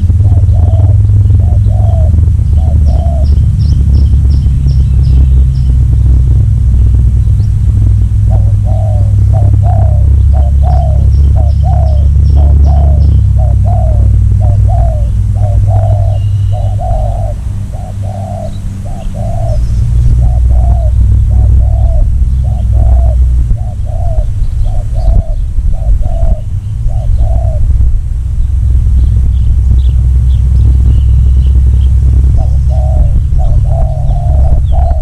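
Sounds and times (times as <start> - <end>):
dove cooing: 0.0 - 3.5, 8.2 - 27.7, 32.3 - 35.0
loud low rumble: 0.0 - 35.0.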